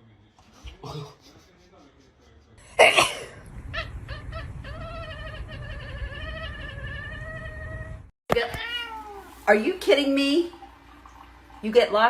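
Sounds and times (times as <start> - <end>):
pet yowling: 3.7 - 9.4.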